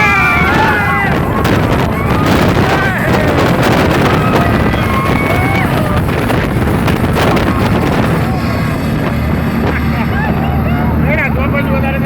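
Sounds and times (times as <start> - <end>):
speedboat engine running: 0.0 - 12.0
wind buffeting microphone: 0.0 - 12.0.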